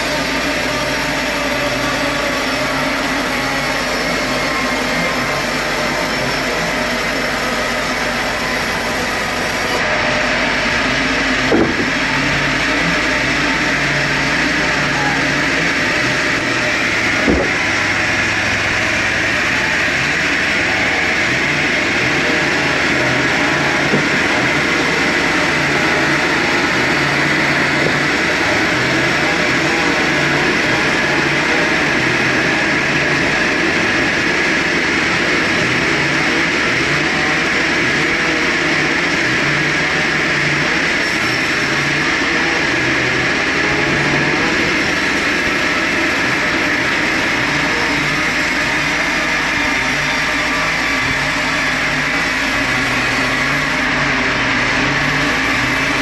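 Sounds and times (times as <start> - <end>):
sawmill machinery running: 0.0 - 56.0
sharp knock: 11.5 - 12.0, 17.2 - 17.6.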